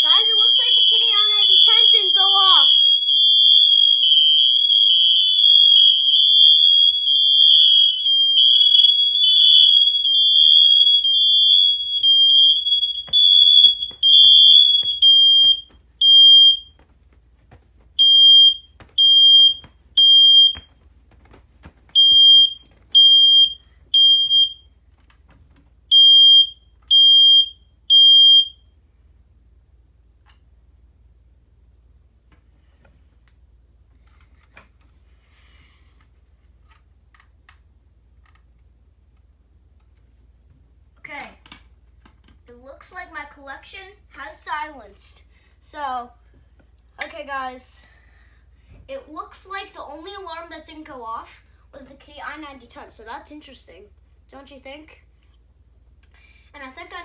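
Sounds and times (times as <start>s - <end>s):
single alarm beeping in threes: 0.0s - 16.7s
smoke alarms beeping: 0.0s - 16.8s, 18.0s - 20.7s, 22.0s - 24.7s, 25.9s - 28.7s.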